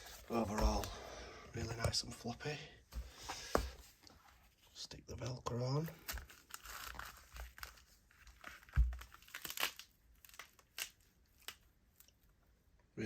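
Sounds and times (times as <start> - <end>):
velcro strips fastening: 6.4 - 11.6.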